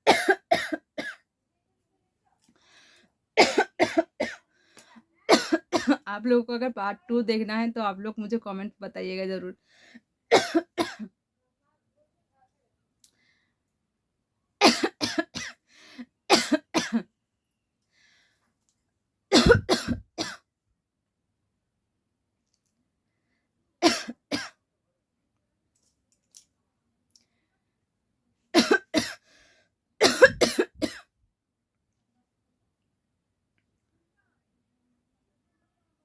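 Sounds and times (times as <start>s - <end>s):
woman coughing: 0.0s - 1.2s, 3.4s - 4.4s, 5.3s - 6.1s, 10.3s - 11.1s, 14.6s - 15.6s, 16.3s - 17.0s, 19.3s - 20.4s, 23.8s - 24.6s, 28.6s - 29.2s, 30.0s - 31.1s.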